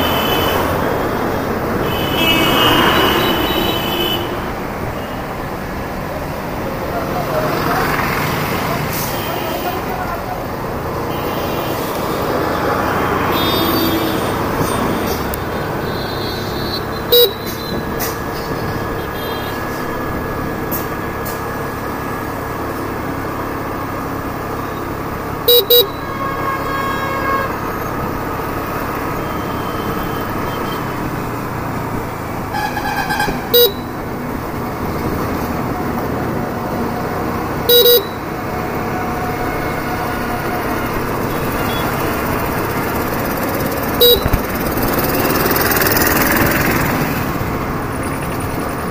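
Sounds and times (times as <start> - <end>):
horn beeping: 0.0 - 5.4, 11.0 - 18.2, 18.8 - 20.2, 24.6 - 28.2, 28.9 - 31.0, 32.5 - 34.0, 37.6 - 45.5
road noise: 0.0 - 48.9
scooter engine running: 33.5 - 48.9.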